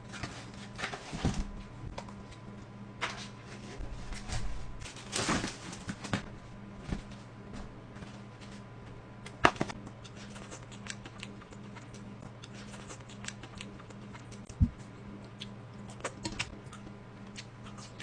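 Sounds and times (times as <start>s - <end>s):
steady low hum: 0.0s - 18.0s
food crunching: 9.8s - 14.6s.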